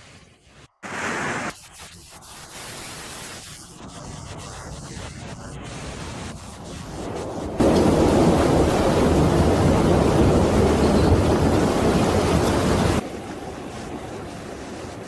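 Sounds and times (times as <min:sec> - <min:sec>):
floodwater rushing: 0:07.0 - 0:15.0.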